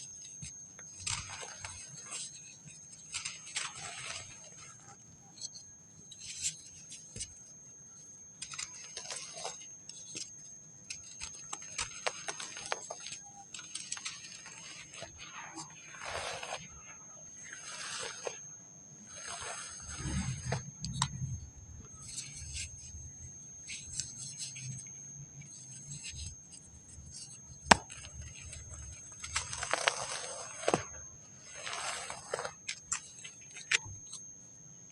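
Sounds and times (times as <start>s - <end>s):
dry sand crumbling: 1.0s - 5.6s, 10.9s - 18.4s, 19.0s - 21.2s, 26.9s - 33.9s
sand crumbling and crunching: 13.6s - 16.7s, 27.7s - 33.1s.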